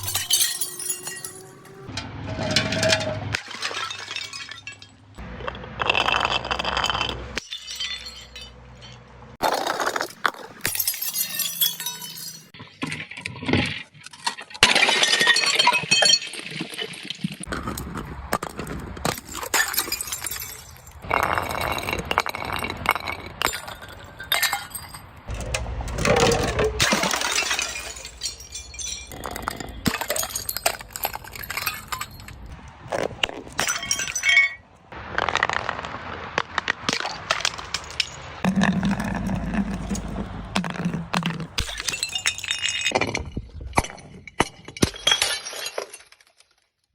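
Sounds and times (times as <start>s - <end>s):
glass shards clinking: 0.0s - 5.2s, 5.8s - 12.6s, 19.1s - 32.6s, 33.5s - 34.6s, 41.3s - 46.7s
glass bottles smashing: 0.0s - 12.6s, 14.3s - 17.0s, 19.0s - 25.4s, 26.0s - 32.6s, 33.2s - 34.7s, 36.9s - 46.9s.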